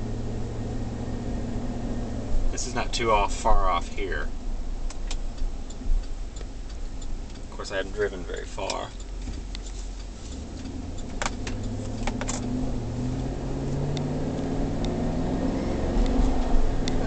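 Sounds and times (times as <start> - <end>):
truck engine accelerating: 0.0 - 4.4, 5.0 - 17.0
tyres on road: 0.0 - 17.0
sharp clicks: 4.8 - 12.6.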